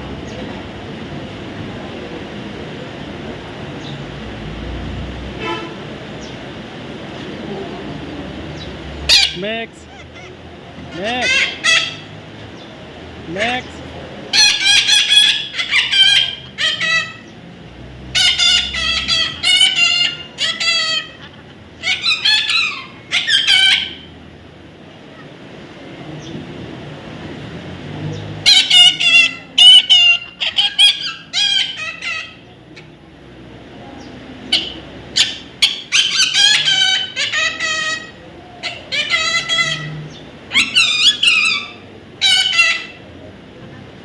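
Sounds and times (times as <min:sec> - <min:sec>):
parrot squawking: 0:09.0 - 0:12.2, 0:14.3 - 0:17.4, 0:18.1 - 0:24.2, 0:28.4 - 0:33.0, 0:34.4 - 0:43.1.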